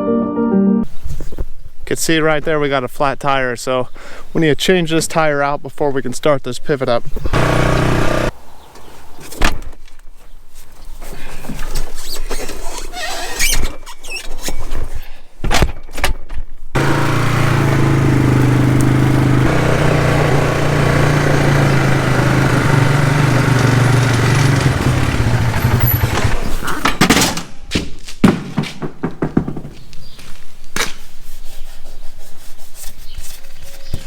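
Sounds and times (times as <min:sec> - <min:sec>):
engine hum: 0:07.3 - 0:08.4, 0:16.8 - 0:26.6.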